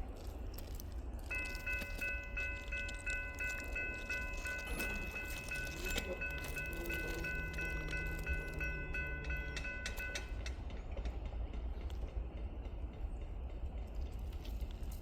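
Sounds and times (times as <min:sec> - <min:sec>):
railroad crossing bell ringing: 0:01.3 - 0:10.8.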